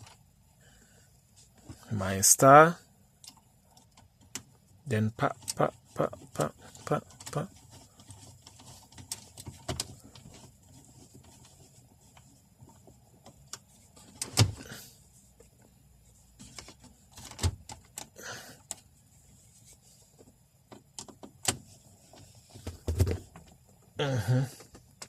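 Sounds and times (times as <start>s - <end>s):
plastic parts clicking and knocking: 5.2s - 14.6s, 16.4s - 18.9s, 20.2s - 23.8s.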